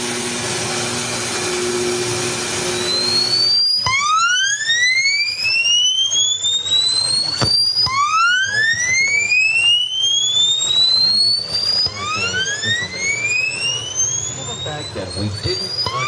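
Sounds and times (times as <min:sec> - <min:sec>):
radio noise hiss: 0:14.2 - 0:16.0.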